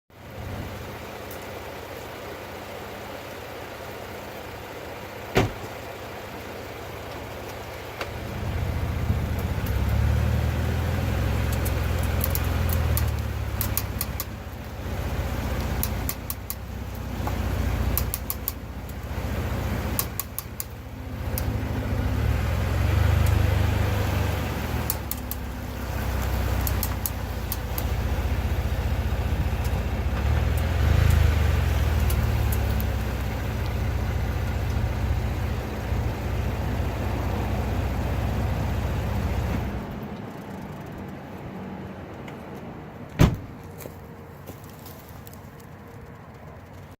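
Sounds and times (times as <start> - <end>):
car driving rumble: 0.1 - 46.9
wheel hub clicking: 11.0 - 21.9, 24.8 - 36.5.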